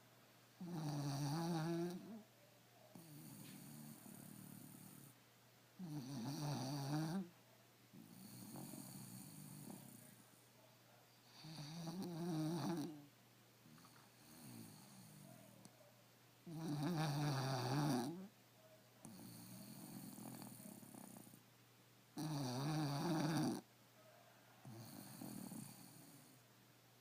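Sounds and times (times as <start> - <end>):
dog snoring: 0.6 - 2.2, 2.9 - 5.2, 5.8 - 7.3, 7.9 - 10.2, 11.3 - 13.1, 13.7 - 15.5, 16.5 - 18.3, 19.0 - 21.4, 22.2 - 23.7, 24.6 - 26.4
soft breathing: 2.2 - 5.2.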